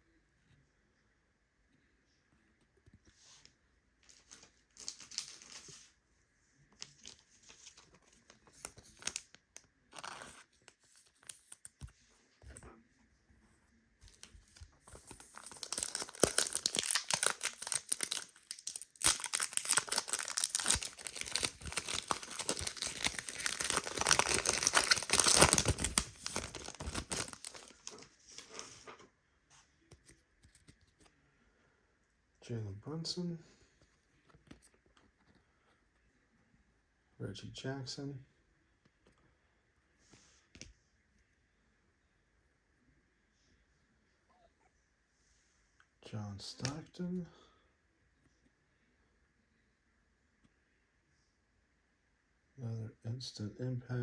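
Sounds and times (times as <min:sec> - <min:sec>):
wrapper tearing and crinkling: 0:08.5 - 0:09.3, 0:14.8 - 0:28.0.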